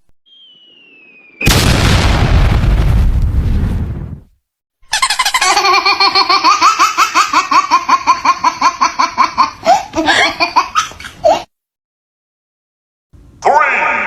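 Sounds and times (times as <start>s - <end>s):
high-pitched laughter: 4.8s - 11.5s.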